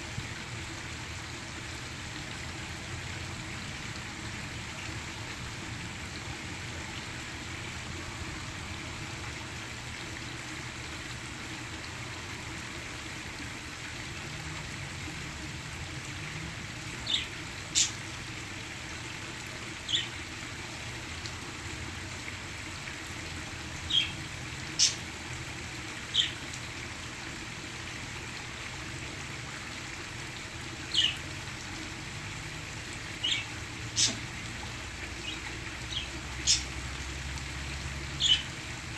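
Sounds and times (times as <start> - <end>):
parakeets chirping: 35.2 - 36.6, 38.2 - 38.5.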